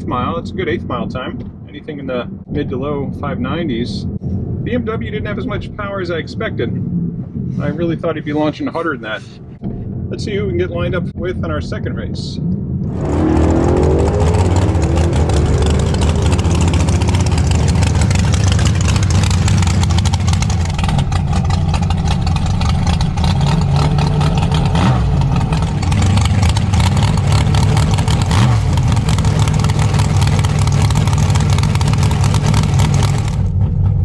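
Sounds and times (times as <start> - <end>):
dragster engine idling: 13.4 - 34.0.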